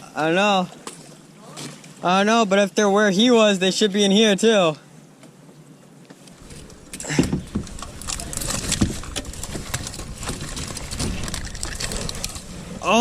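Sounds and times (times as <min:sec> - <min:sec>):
knocks and rattles against kayak: 0:06.1 - 0:13.0
water splashing: 0:06.4 - 0:13.0
wind rumble on microphone: 0:06.4 - 0:13.0.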